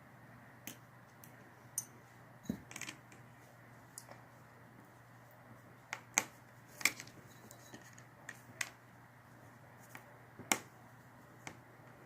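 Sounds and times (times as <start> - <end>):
small clicks and taps of tools: 0.6 - 1.9.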